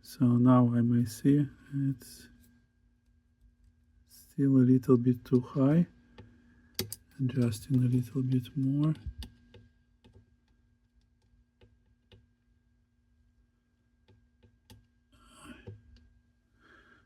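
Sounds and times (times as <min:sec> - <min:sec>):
faint steady hum: 0:00.0 - 0:17.0
small clicks of hand tools: 0:06.1 - 0:12.3.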